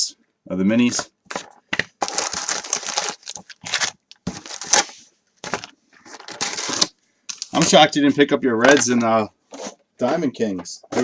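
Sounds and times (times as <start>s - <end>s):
cardboard and plastic crinkling: 1.3s - 7.9s.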